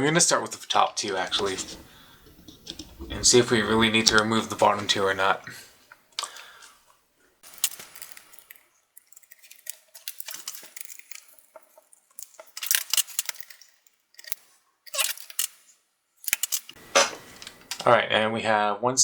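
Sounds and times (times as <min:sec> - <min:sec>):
screwdriver clicks and scrapes: 0:01.3 - 0:05.1, 0:07.4 - 0:17.9.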